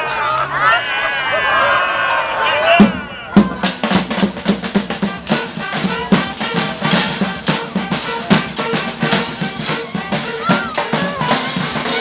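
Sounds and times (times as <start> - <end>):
street band drums: 2.6 - 12.0.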